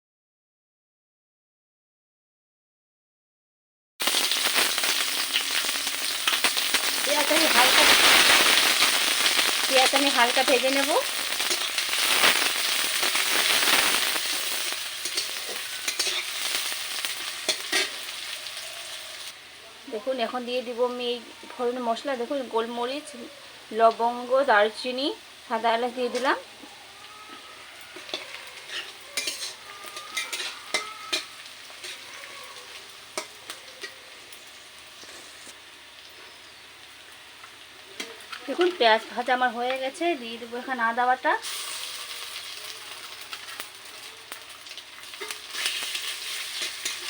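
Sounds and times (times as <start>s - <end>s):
onions sizzling in oil: 4.0s - 47.0s
utensil scraping a pan: 11.2s - 16.6s, 28.0s - 32.1s.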